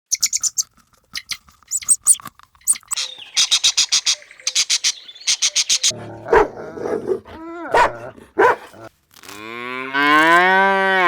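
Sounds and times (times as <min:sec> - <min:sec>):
small birds chirping: 0:00.0 - 0:05.9.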